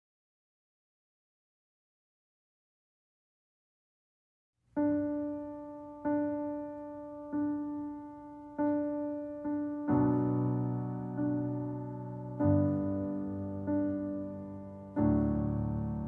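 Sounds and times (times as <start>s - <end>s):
slow solo piano: 4.7s - 16.0s.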